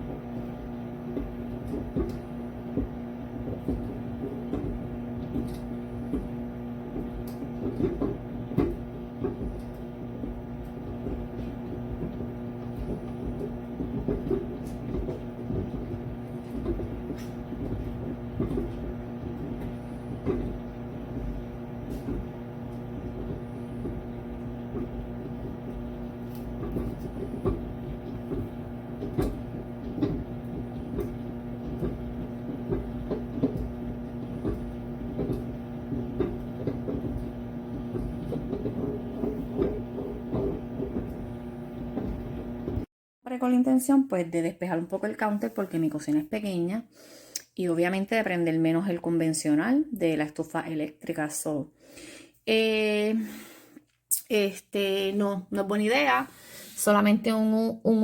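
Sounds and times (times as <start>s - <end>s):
microwave oven humming: 0.0s - 42.9s.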